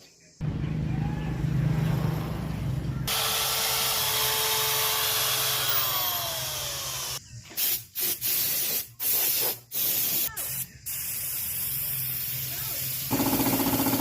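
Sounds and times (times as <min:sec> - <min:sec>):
power tool humming: 0:03.1 - 0:07.2
loud steady hiss: 0:06.7 - 0:13.9.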